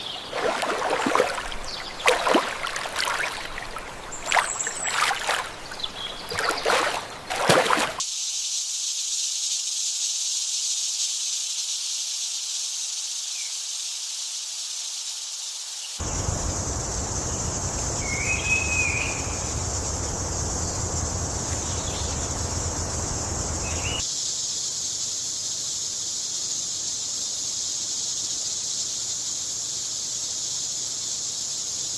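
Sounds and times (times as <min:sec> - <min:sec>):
bird chirp: 0:00.0 - 0:07.8, 0:16.0 - 0:24.0
high-pitched outdoor hiss: 0:00.0 - 0:31.9.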